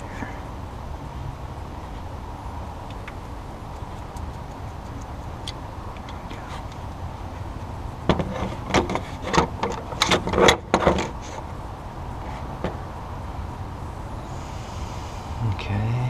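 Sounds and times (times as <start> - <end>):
steady low hum: 0.0 - 16.0
car parts and tools clicking: 2.8 - 6.9, 7.6 - 11.4.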